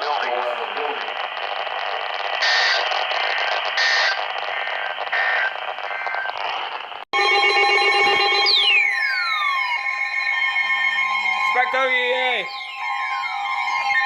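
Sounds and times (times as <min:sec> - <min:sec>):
two-tone data bursts: 0:00.0 - 0:06.9
radio static hiss: 0:00.0 - 0:07.1.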